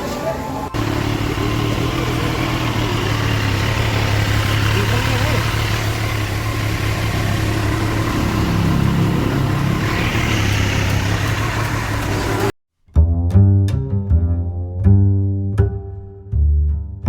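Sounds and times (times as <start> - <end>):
motorcycle engines running: 0.0 - 12.5
music with plucked string bass: 12.9 - 17.0.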